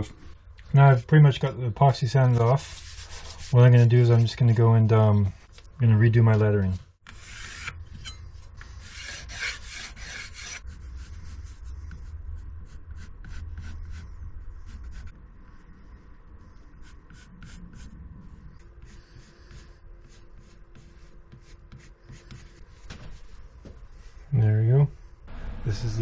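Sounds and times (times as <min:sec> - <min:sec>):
low hum: 0:10.6 - 0:21.7, 0:22.4 - 0:26.0.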